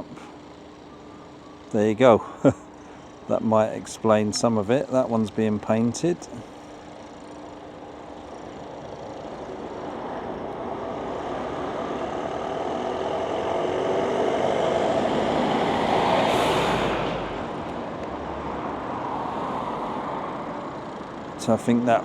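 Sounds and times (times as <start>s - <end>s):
large vehicle engine passing: 9.6s - 20.5s.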